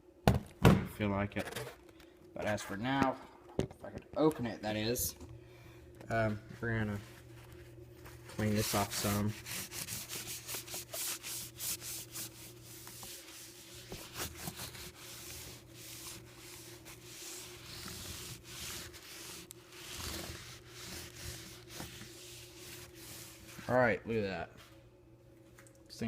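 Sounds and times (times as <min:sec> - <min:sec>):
paper towel scrubbing casing: 0:06.8 - 0:23.7.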